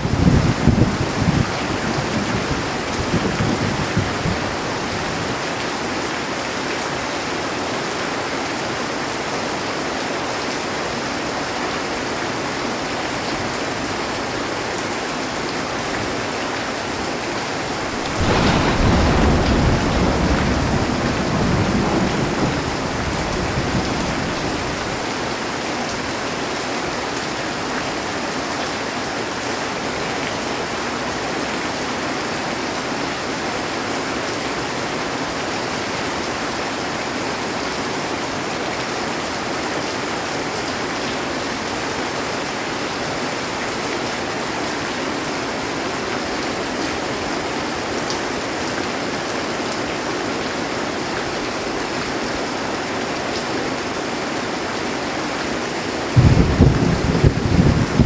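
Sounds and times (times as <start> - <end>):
heavy rain on a metal roof: 0.0 - 58.0
thunder rumbling: 17.7 - 25.1, 56.1 - 58.0.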